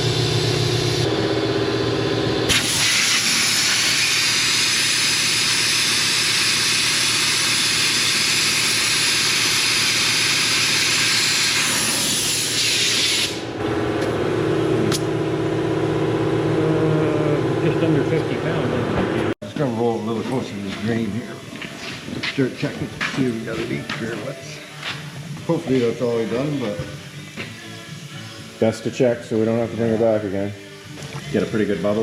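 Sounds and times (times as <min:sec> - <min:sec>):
steady motor hum: 0:00.0 - 0:12.1, 0:13.2 - 0:32.0
compressed air hissing into tire: 0:02.5 - 0:13.5.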